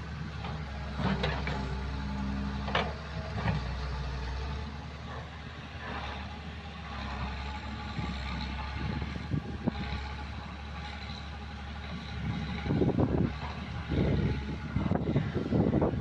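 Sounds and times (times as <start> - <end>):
diesel excavator engine running: 0.0 - 16.0.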